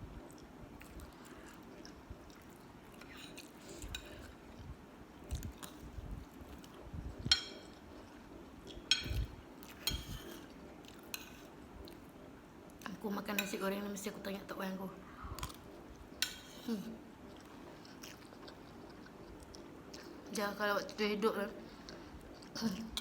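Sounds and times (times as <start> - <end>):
person chewing food: 0.2 - 12.1, 15.4 - 20.3.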